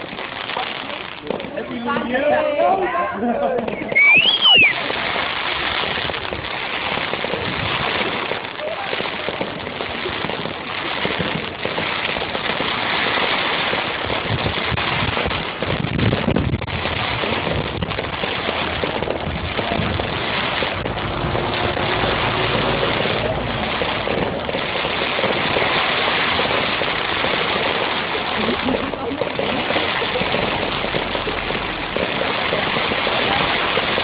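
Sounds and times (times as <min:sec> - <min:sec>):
fireworks crackling: 0:00.0 - 0:34.0
low firework boom: 0:13.7 - 0:34.0.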